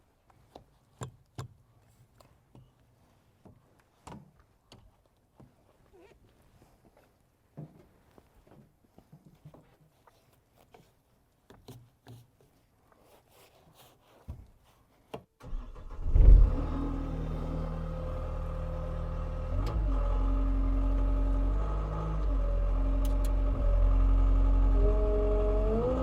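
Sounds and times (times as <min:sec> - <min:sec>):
diesel engine starting and running: 0:15.4 - 0:26.0.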